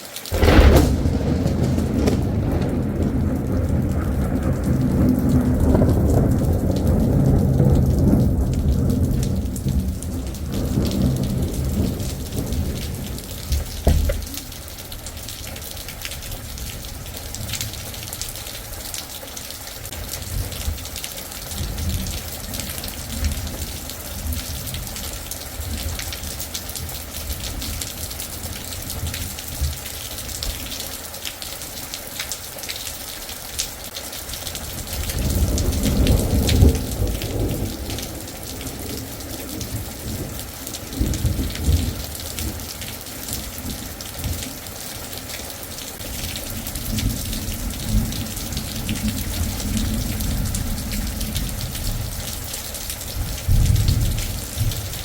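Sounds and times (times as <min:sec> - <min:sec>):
rain falling: 0:00.0 - 0:55.0
thunder rumbling: 0:00.3 - 0:17.9, 0:34.7 - 0:42.6.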